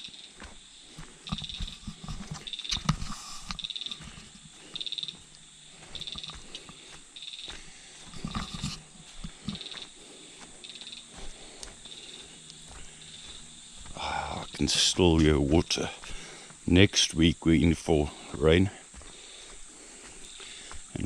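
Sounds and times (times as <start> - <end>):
footsteps on forest trail: 0.0 - 21.0.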